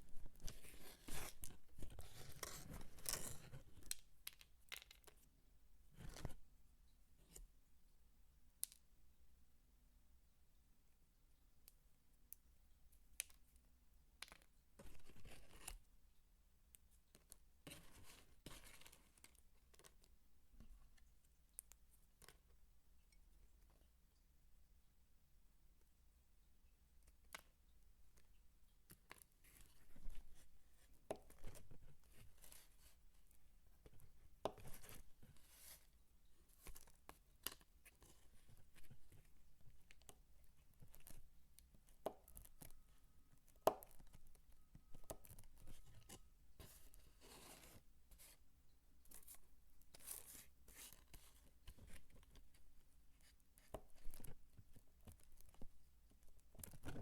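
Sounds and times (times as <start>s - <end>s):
dry soap being cut and crunched: 0.3s - 5.2s, 36.6s - 48.3s.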